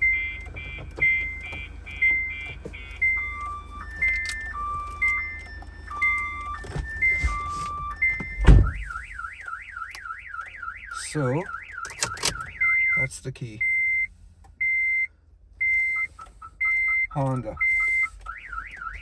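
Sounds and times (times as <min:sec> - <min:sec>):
car alarm siren: 0:00.0 - 0:19.0
loud thump: 0:08.4 - 0:08.9.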